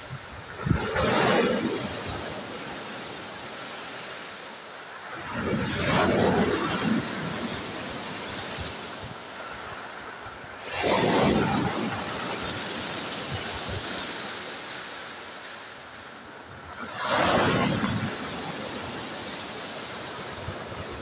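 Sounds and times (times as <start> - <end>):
sea waves breaking on shore: 0.0 - 21.0.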